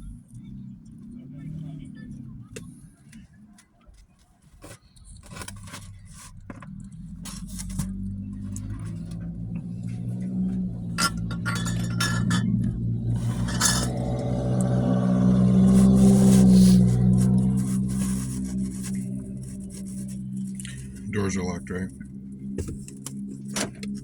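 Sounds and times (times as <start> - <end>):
steady low hum: 7.3 - 24.0
clinks of small objects handled: 11.0 - 14.1.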